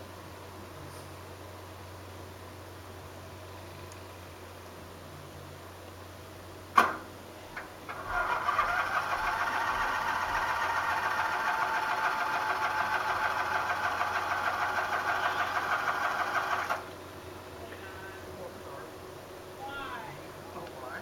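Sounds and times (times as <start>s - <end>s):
tractor engine cranking: 7.8s - 16.9s.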